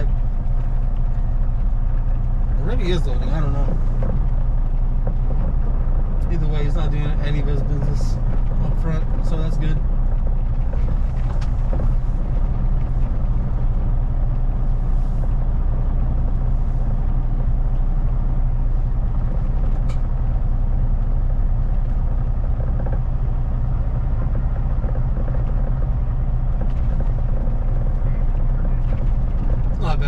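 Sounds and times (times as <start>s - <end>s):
truck diesel engine idling: 0.0s - 30.0s.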